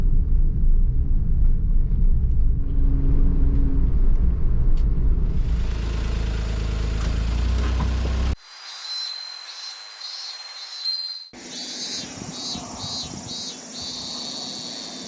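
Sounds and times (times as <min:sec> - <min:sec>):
car road and engine noise: 0:00.0 - 0:08.5.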